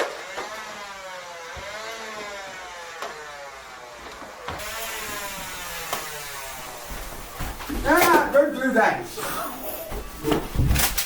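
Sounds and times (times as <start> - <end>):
blaster motors whirring: 4.6 - 7.6.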